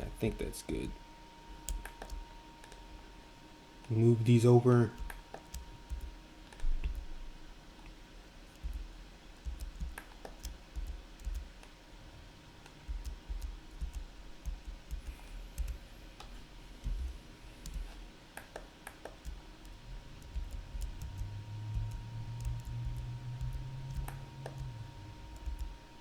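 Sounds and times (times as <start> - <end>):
keyboard key presses: 18.9 - 25.7.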